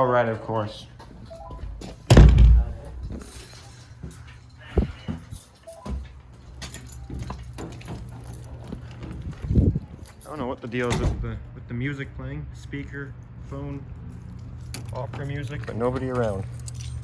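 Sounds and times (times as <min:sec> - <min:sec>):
loud thump: 0:02.1 - 0:03.2
steady low hum: 0:02.1 - 0:05.1.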